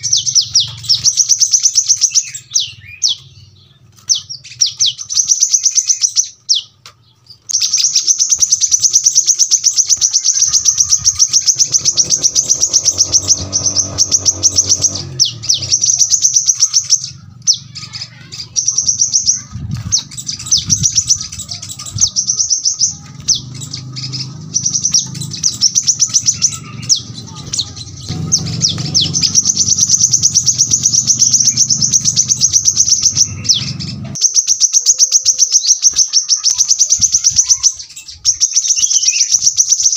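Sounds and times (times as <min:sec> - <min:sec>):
sunbird singing rapid high chirps: 0:00.0 - 0:39.9.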